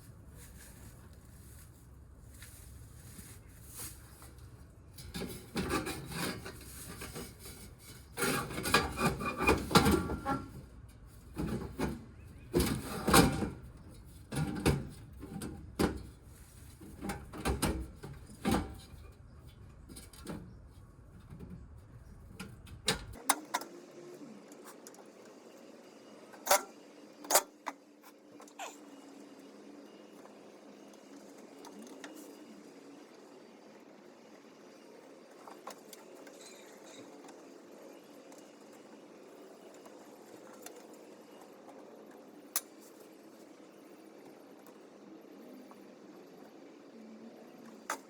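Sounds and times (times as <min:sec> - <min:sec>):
tools rubbing scraping and knocking: 0:05.0 - 0:10.6.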